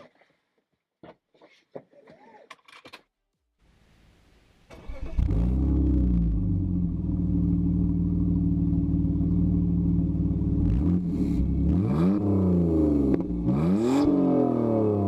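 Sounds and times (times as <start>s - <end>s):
car engine idling and revving: 4.8s - 15.0s.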